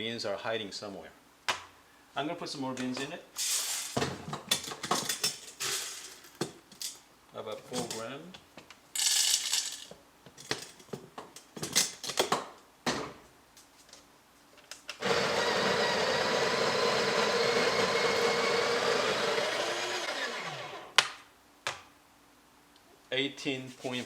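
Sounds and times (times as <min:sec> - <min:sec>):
coffee grinder grinding: 0:15.0 - 0:21.0.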